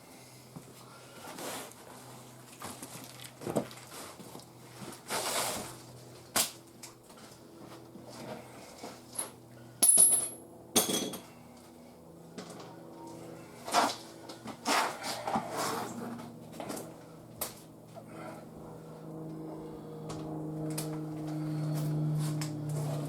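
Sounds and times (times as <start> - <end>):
metal clinks and knocks: 9.2 - 11.3.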